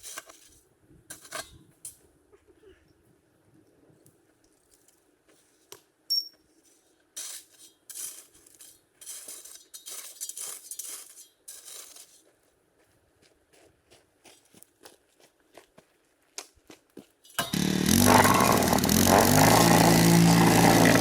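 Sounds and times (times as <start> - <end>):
sharp metallic clink: 6.1 - 6.4
scraping and crunching: 6.6 - 12.3, 17.4 - 21.0.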